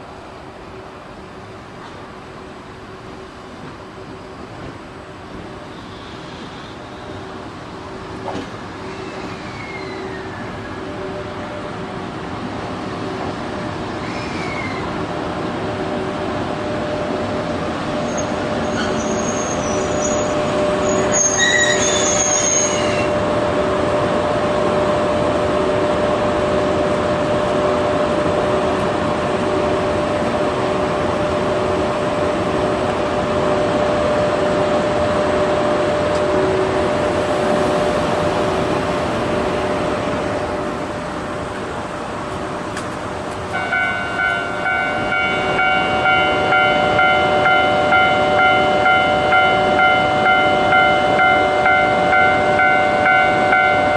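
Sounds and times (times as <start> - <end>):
train rolling rumble: 0.0 - 53.9
wheels squealing: 8.7 - 10.8, 14.0 - 14.9, 18.0 - 23.1.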